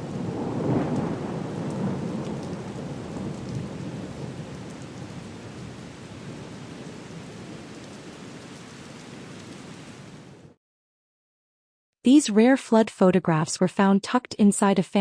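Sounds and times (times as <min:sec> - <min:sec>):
low rumble of thunder: 0:00.0 - 0:08.3
heavy rain falling: 0:00.0 - 0:10.6.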